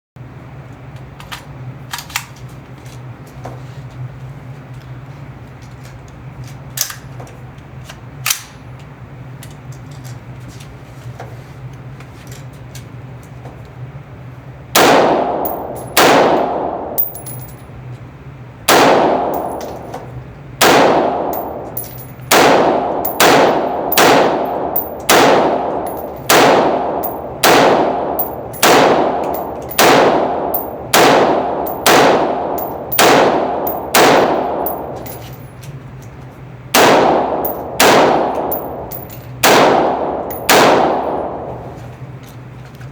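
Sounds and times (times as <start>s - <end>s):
low steady hum: 11.7s - 42.9s
rifle shots echoing indoors: 14.7s - 17.6s, 18.6s - 35.5s, 36.7s - 41.8s.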